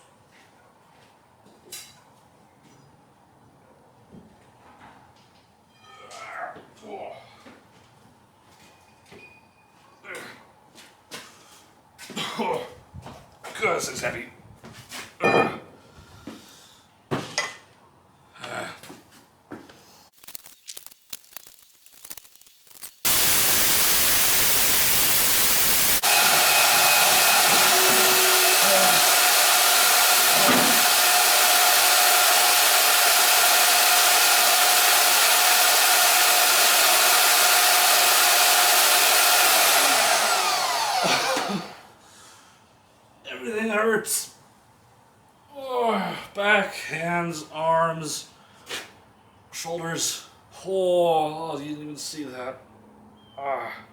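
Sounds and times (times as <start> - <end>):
power tool cutting metal: 23.1 - 41.9.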